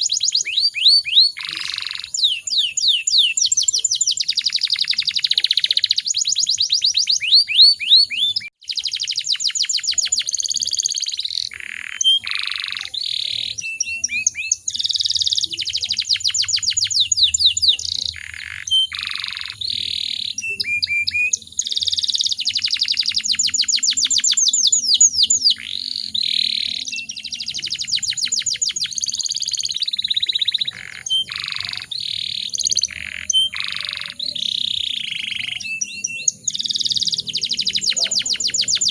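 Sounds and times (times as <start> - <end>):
canary singing trills: 0.0 - 38.9.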